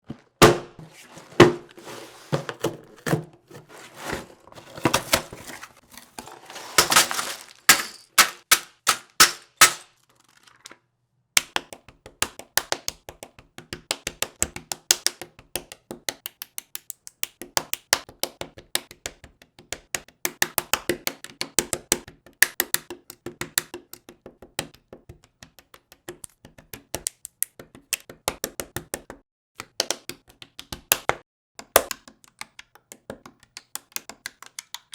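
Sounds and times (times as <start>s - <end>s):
box packaging crackling: 0.0s - 10.6s.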